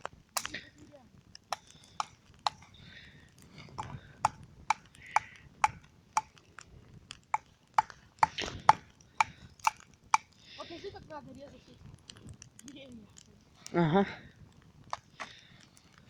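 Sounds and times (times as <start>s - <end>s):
blade chopping wood: 0.4s - 0.6s, 1.4s - 2.8s, 3.6s - 10.4s.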